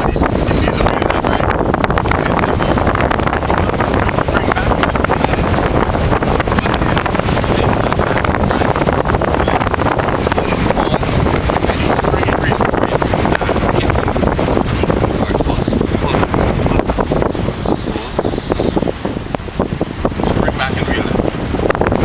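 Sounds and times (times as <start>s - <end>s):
strong wind buffeting microphone: 0.0s - 22.0s.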